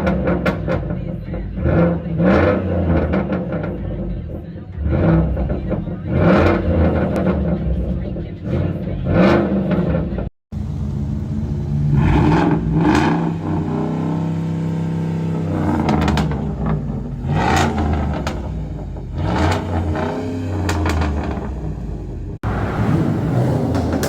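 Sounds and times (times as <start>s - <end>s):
engine revving through exhaust: 0.0s - 24.0s
exhaust cracks and pops: 15.4s - 22.2s, 22.8s - 24.0s.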